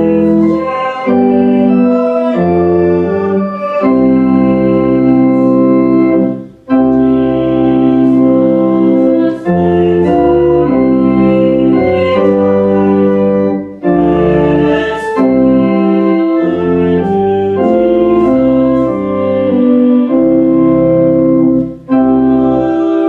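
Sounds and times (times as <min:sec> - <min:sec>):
organ playing held chords: 0:00.0 - 0:23.0.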